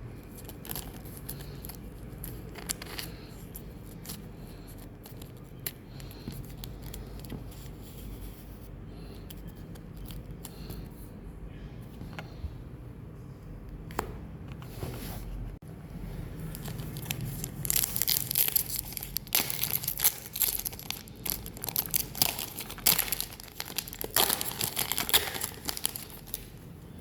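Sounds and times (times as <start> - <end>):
steady low hum: 0.0 - 27.0
scissors snipping packaging: 16.6 - 26.6.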